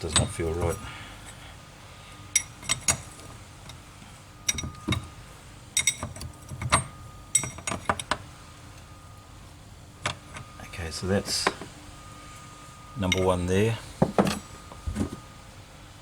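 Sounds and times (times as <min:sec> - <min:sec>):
spanner clinking on metal: 0:00.0 - 0:01.4, 0:02.3 - 0:03.8, 0:04.4 - 0:05.1, 0:05.8 - 0:08.2, 0:14.0 - 0:14.6.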